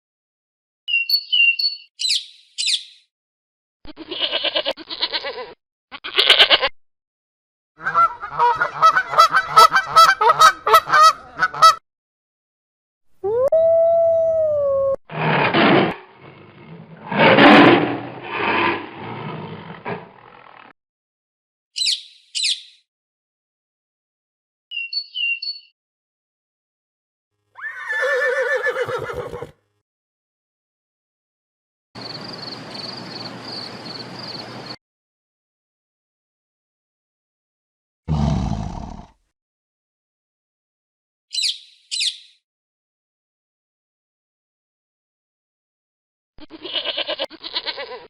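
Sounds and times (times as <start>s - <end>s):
long pitch-bending animal call: 13.2s - 15.0s
rough animal calls: 38.1s - 39.2s.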